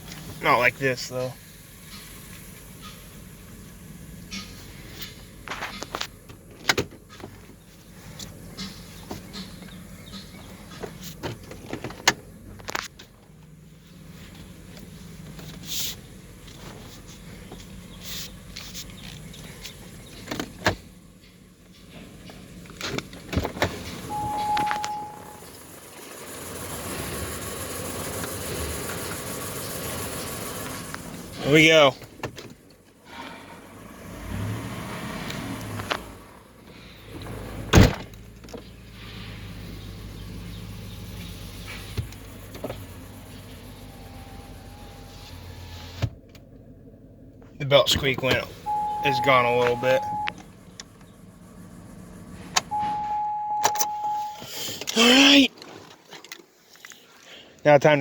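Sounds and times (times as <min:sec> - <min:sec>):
car engine idling: 0:00.0 - 0:55.5
car door slamming: 0:22.8 - 0:25.4, 0:37.3 - 0:38.2, 0:52.6 - 0:54.4.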